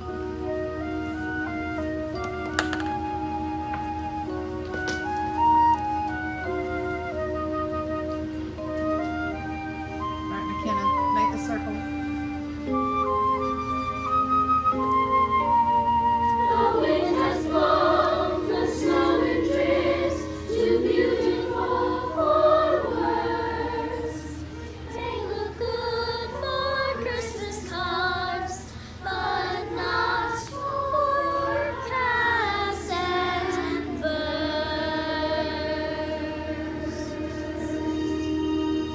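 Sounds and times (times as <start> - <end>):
choir singing: 14.7 - 38.9.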